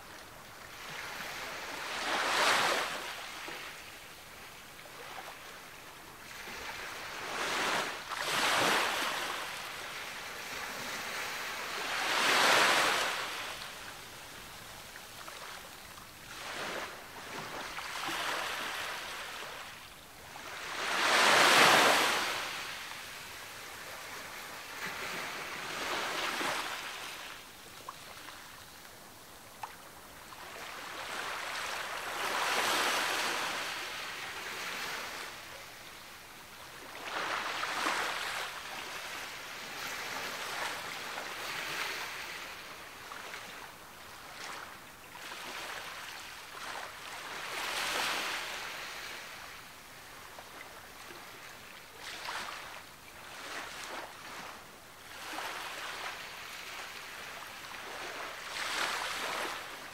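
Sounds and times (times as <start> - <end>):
sea waves breaking on shore: 0.5 - 3.9, 6.2 - 14.0, 15.0 - 28.6, 30.4 - 35.6, 36.8 - 43.6, 44.2 - 59.9.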